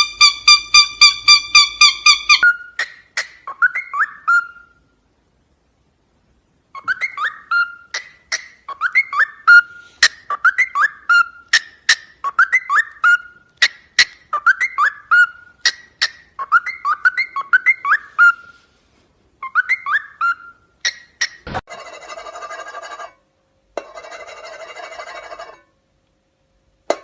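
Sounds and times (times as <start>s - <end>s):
parrot whistling chirping notes: 0.0s - 4.8s, 6.7s - 18.6s, 19.4s - 21.4s.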